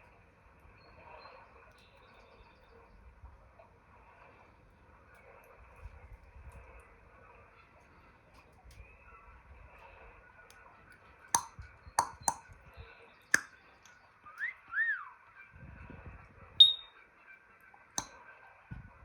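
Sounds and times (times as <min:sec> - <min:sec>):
parrot clicks: 0:11.4 - 0:12.6, 0:13.3 - 0:13.6
parrot whistle: 0:14.3 - 0:15.2, 0:16.6 - 0:17.0
parrot high chirp: 0:16.6 - 0:17.0.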